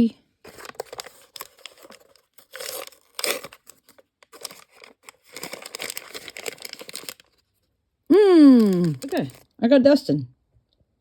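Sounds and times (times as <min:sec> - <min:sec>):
packaging crinkling and tearing: 0:00.4 - 0:07.6, 0:08.5 - 0:09.5
packaging rustling: 0:00.4 - 0:07.6, 0:08.6 - 0:09.5.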